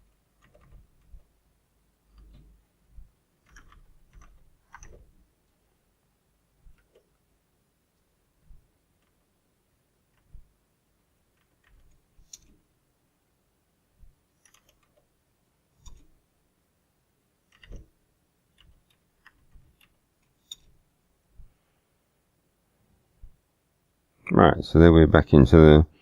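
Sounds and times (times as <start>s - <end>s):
computer keyboard keystrokes: 0.4s - 1.2s, 3.4s - 5.0s, 11.4s - 12.5s, 14.4s - 15.0s, 17.5s - 17.9s.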